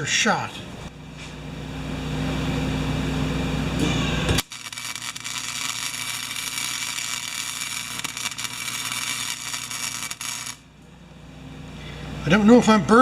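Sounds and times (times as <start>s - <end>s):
arc welding crackling hiss: 4.3s - 10.6s.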